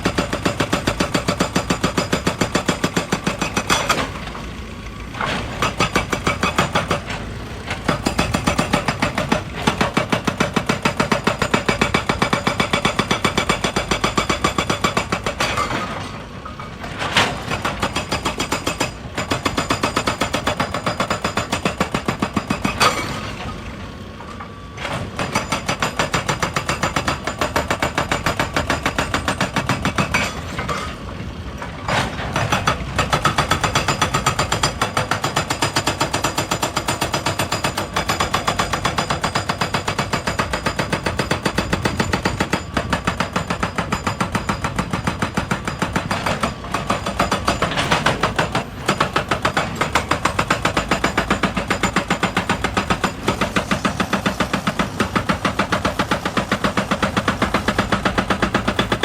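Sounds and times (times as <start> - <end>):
hydraulic rock breaker hammering: 0.0 - 59.0
excavator engine running: 0.1 - 30.0, 40.1 - 59.0.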